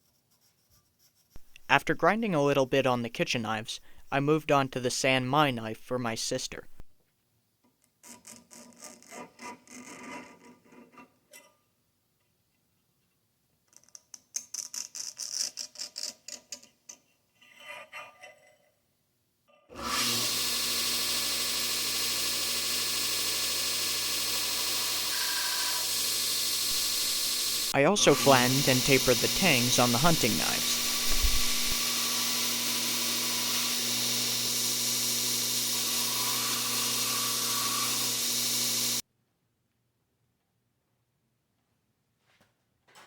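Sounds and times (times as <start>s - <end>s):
belt grinder whine: 19.7s - 39.0s.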